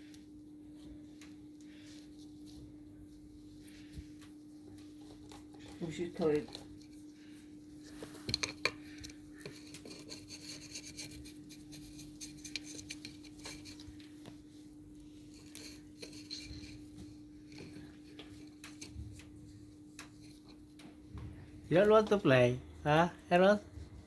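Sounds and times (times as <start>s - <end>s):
cat rubbing and scratching: 0.0s - 24.0s
steady low hum: 0.0s - 24.0s
light clicks and taps: 7.8s - 21.4s.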